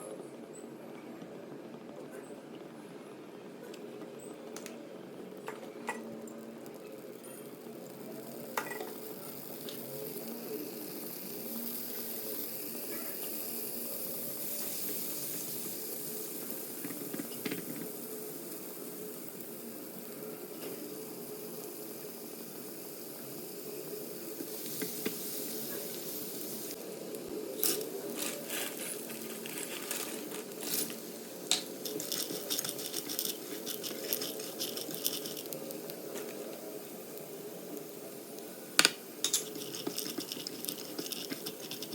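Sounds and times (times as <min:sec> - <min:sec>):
steady sizzling hiss: 0:00.0 - 0:41.9
utensils clinking on pots: 0:08.6 - 0:09.2, 0:38.8 - 0:41.9.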